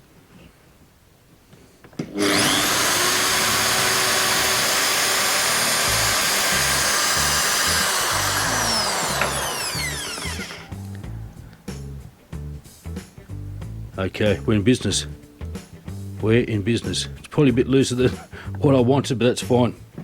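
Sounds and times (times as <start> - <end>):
electric drill running: 2.1 - 10.8
music with low beat: 6.8 - 18.7.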